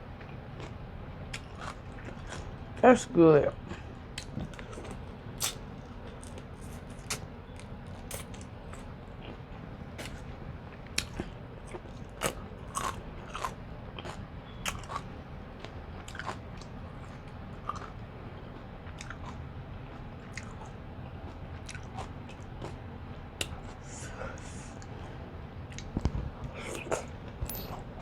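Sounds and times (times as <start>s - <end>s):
wet chewing and smacking: 0.2s - 2.8s, 3.6s - 22.8s, 25.7s - 26.2s.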